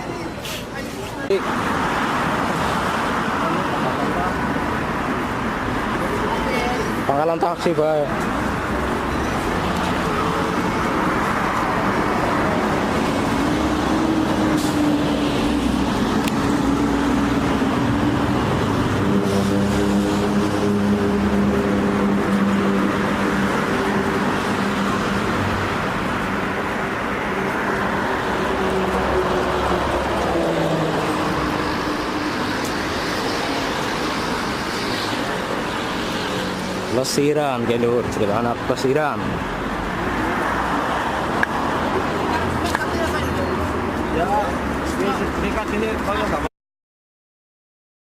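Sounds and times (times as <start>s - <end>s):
motor vehicles rumbling: 0.0s - 46.5s.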